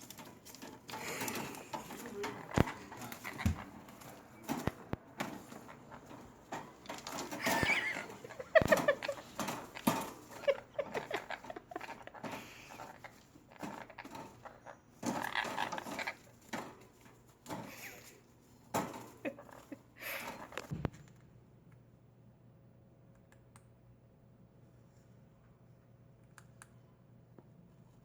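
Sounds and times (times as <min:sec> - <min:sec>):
parrot calls: 0:07.4 - 0:16.2.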